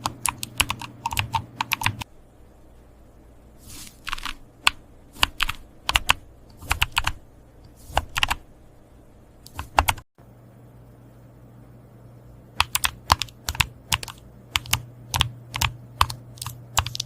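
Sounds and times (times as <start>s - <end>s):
typing on mechanical keyboard: 0.0s - 2.1s, 4.0s - 7.2s, 7.9s - 8.4s, 9.5s - 10.0s, 12.6s - 17.0s.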